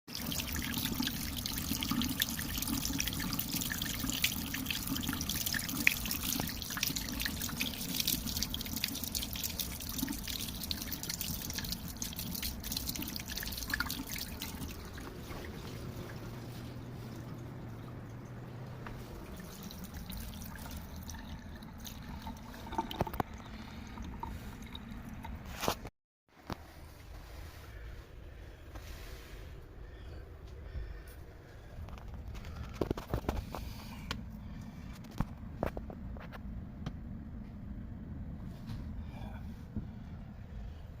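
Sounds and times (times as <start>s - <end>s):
water dripping at a sink: 0.1s - 25.4s.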